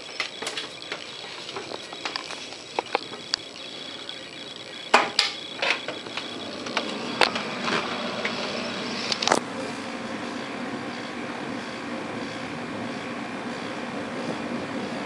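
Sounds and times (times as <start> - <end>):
sharp knocks and clicks: 0.0 - 3.6, 4.9 - 7.8.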